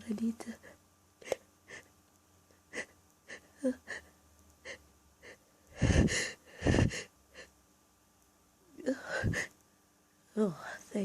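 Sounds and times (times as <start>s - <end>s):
person's sharp catching breaths: 5.7s - 7.1s.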